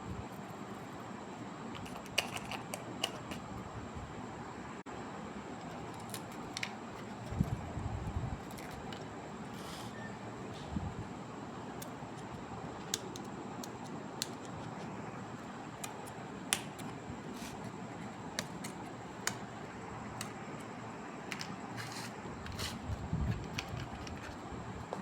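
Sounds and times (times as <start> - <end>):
steady hiss: 9.0 - 23.1.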